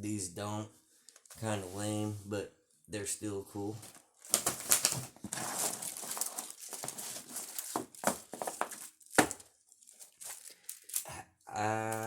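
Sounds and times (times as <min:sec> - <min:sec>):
plastic and cardboard crinkling: 0:03.7 - 0:11.1.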